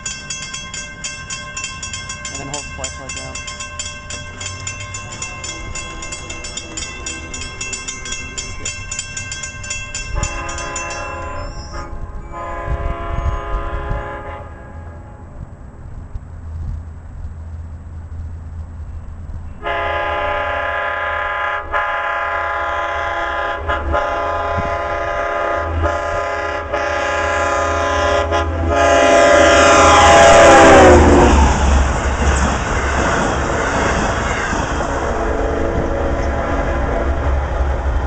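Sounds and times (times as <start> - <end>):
locomotive chime air horn: 0.0 - 15.3, 19.6 - 31.3
train rumble: 0.0 - 38.0.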